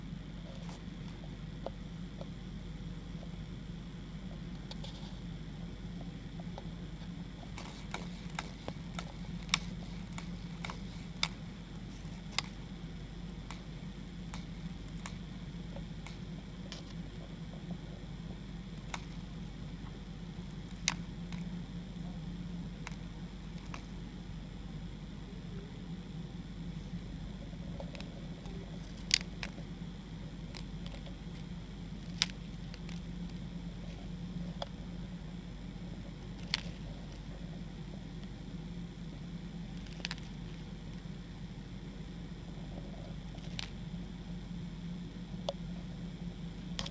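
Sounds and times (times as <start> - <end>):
steady low hum: 0.0 - 46.9
mantis clicking: 5.7 - 24.2, 26.7 - 34.9, 35.6 - 44.1.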